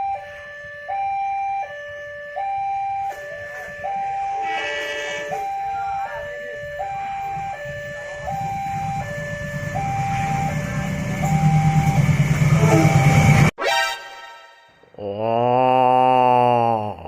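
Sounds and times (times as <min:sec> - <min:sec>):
two-tone emergency siren: 0:00.0 - 0:14.8
low rumble: 0:06.6 - 0:13.5.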